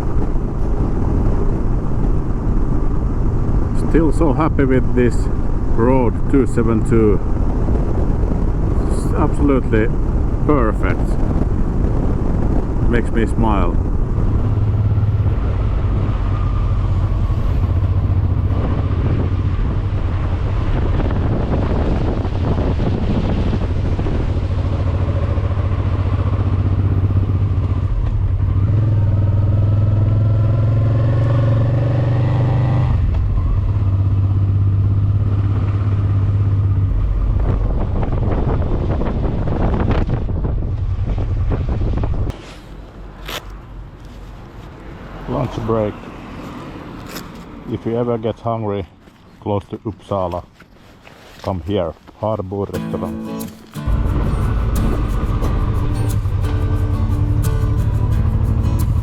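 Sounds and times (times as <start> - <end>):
wind rush: 0.0 - 29.2, 35.0 - 47.7, 52.8 - 59.0
motorcycle engine running: 23.3 - 30.8, 52.8 - 59.0.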